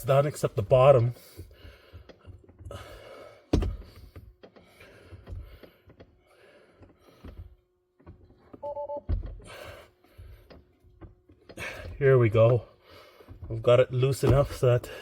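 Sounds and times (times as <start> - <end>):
two-tone electronic beep: 8.6 - 9.1.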